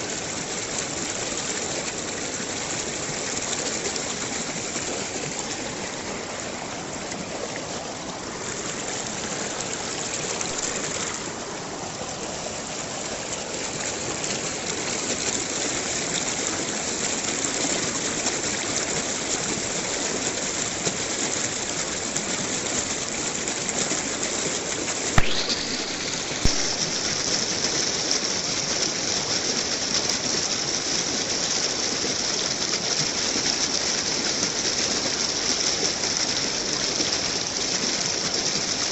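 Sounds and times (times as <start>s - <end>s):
running water rushing: 0.0s - 38.9s
sharp clicks: 25.2s - 27.3s.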